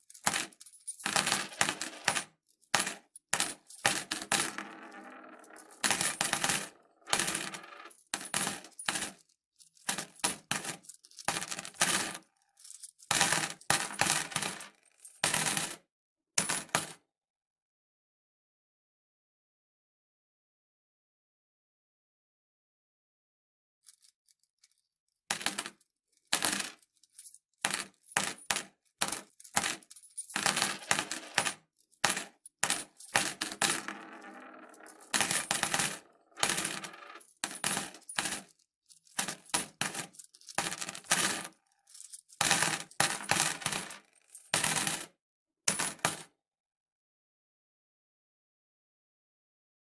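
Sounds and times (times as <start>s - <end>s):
metal coins clinking: 0.1s - 14.7s, 25.3s - 45.0s.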